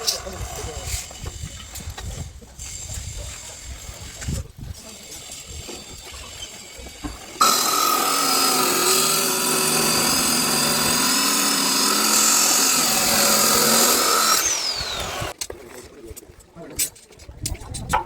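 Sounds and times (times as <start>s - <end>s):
power tool running: 7.4s - 15.3s.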